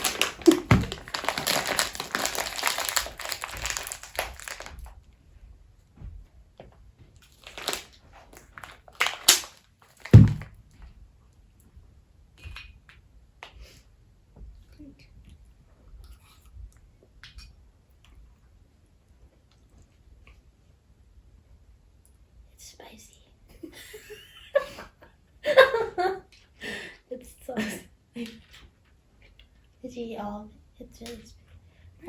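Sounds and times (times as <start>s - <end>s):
plastic wrapping crinkling: 0.0s - 5.0s, 7.3s - 10.5s
short knocks and handling: 10.2s - 10.5s.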